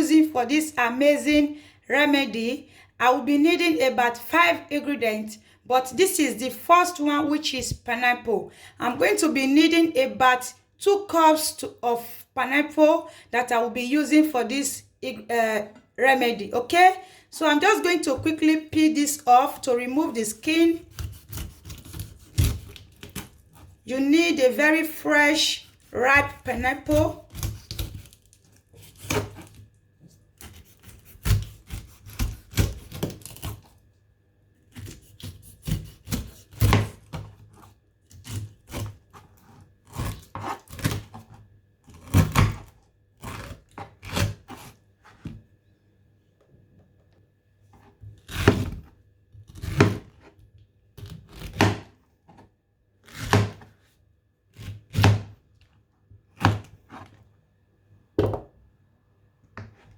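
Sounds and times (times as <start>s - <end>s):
knife cutting pineapple skin: 17.7s - 33.9s, 34.7s - 45.4s, 48.1s - 53.9s, 54.5s - 55.4s, 56.3s - 57.2s
knife thunk on cutting board: 58.2s - 58.5s.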